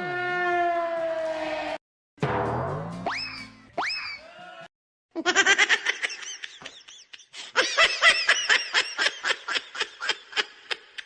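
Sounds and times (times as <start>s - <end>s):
high-pitched laughter: 5.2s - 11.0s.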